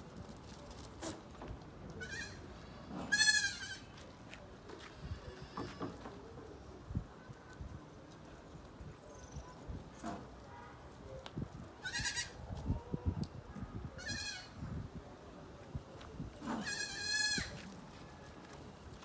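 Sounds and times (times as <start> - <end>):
goats bleating: 3.1 - 3.8, 16.6 - 17.5.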